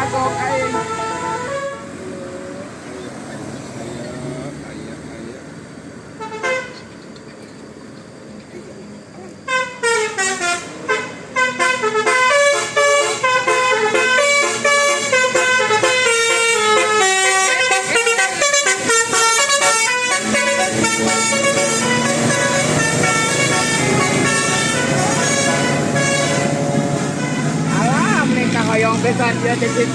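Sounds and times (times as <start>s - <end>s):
bus musical horn: 0.0s - 2.7s, 6.2s - 6.9s, 9.4s - 29.9s.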